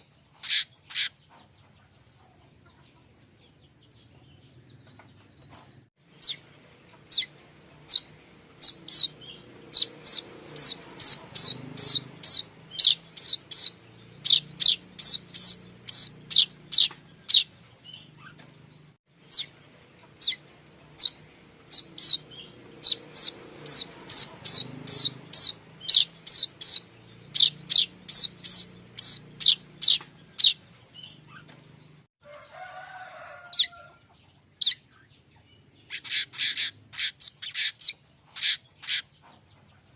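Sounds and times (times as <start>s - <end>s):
bird chips: 6.1s - 31.9s.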